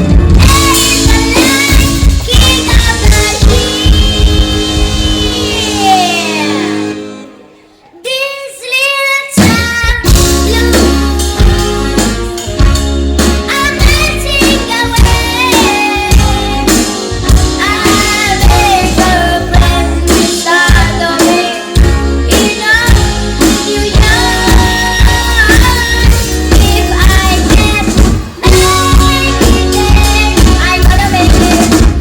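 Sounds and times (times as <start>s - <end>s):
rock band playing: 0.0s - 7.6s, 9.3s - 32.0s
young woman singing: 0.4s - 6.9s, 17.6s - 32.0s.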